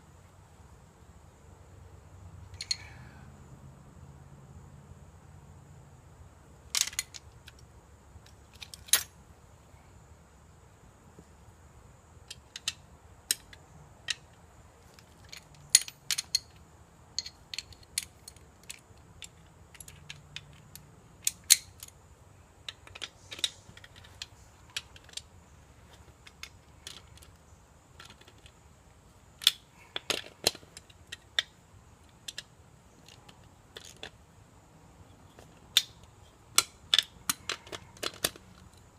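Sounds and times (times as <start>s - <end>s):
metal tools and bolts clinking: 2.5s - 3.0s, 6.7s - 7.6s, 8.2s - 9.2s, 14.9s - 22.0s, 22.7s - 25.3s, 35.3s - 38.8s.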